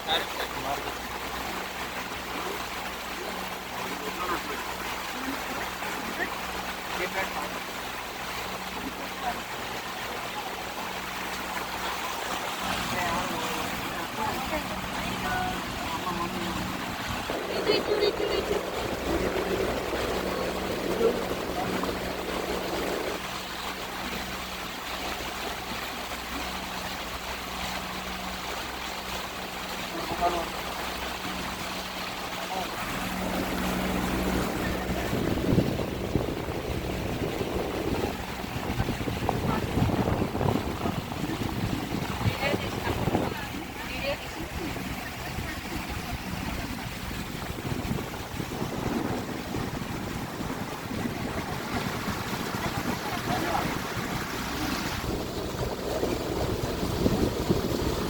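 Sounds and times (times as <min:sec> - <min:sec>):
rushing water: 0:00.0 - 0:58.0
wind buffeting microphone: 0:10.8 - 0:58.0.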